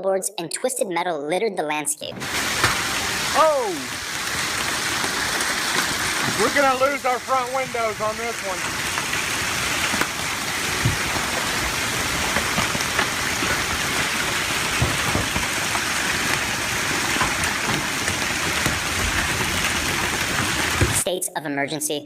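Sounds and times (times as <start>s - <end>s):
objects knocking against vehicle: 2.2s - 3.2s, 8.6s - 21.0s
heavy rain pouring onto vehicle: 2.2s - 21.0s.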